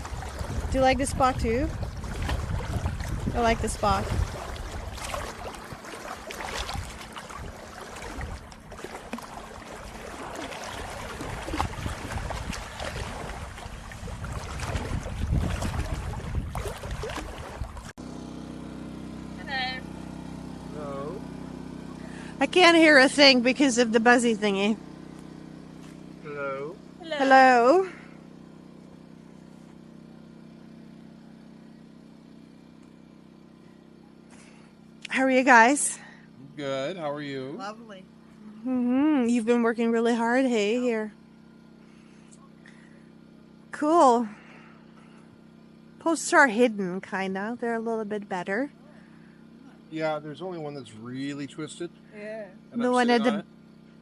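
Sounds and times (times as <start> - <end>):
wind rumbling on microphone: 0.0 - 8.8, 9.4 - 17.9
water lapping at shore: 0.0 - 18.0
engine droning: 0.0 - 54.0
faint steady hum: 32.8 - 54.0.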